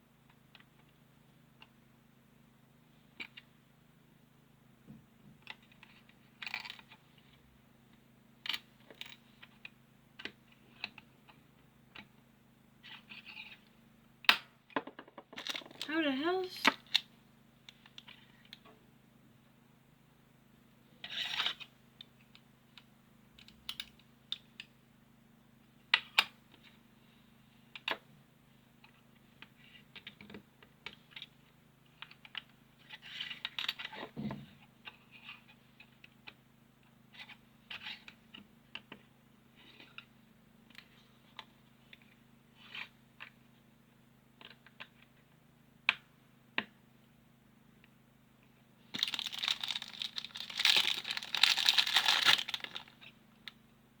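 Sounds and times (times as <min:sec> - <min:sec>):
plastic pieces clicking: 0:49.0 - 0:52.9.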